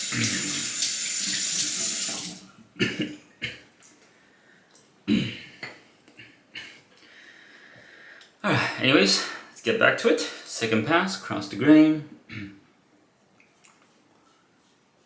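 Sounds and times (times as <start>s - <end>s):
sink tap running: 0.0s - 2.5s.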